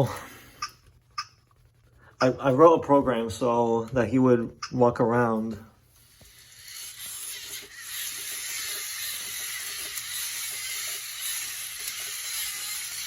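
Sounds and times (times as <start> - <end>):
robot motors whirring: 6.2 - 13.0.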